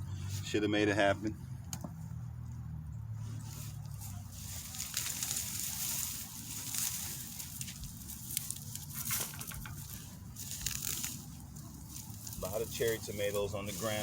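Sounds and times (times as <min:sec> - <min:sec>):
leaves rustling and crackling: 0:03.2 - 0:14.0.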